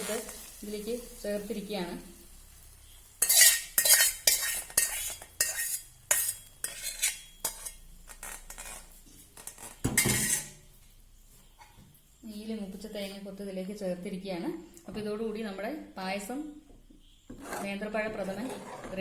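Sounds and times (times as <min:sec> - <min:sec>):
spoon clinking and scraping pot: 0:03.2 - 0:10.7.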